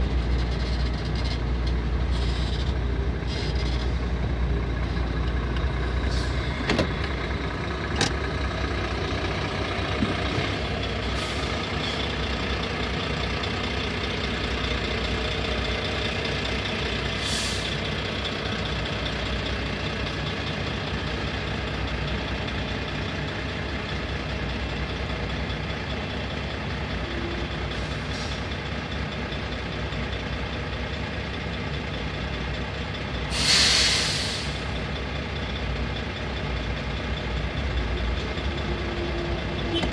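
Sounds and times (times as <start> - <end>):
truck diesel engines idling: 0.0 - 39.9
air brake hiss: 17.2 - 17.8, 33.3 - 34.8.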